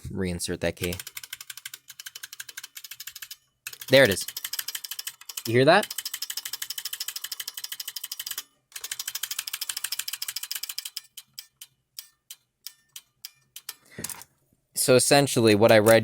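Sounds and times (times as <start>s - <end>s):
tinny keyboard key clicking: 0.8s - 1.5s.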